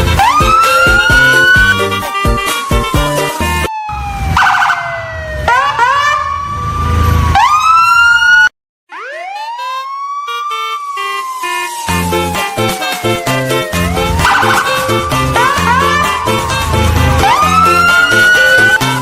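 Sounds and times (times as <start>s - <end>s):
background music with a beat: 0.0s - 3.7s, 11.7s - 19.0s
siren wailing: 0.0s - 19.0s.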